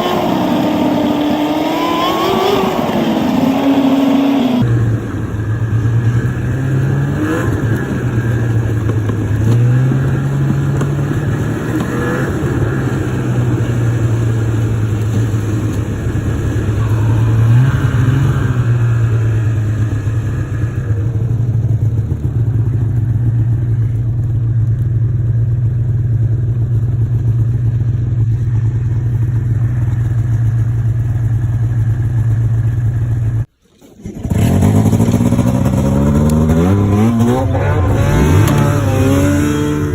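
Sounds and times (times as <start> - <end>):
snowmobile engine running: 0.0 - 33.4, 34.0 - 39.9.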